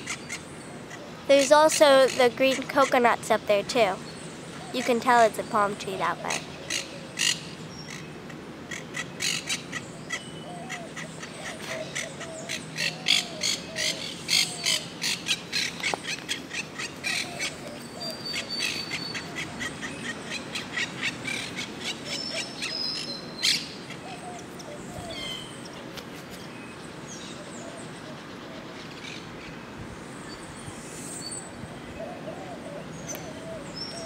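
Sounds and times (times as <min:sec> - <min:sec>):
parrots warbling: 0:08.7 - 0:15.8.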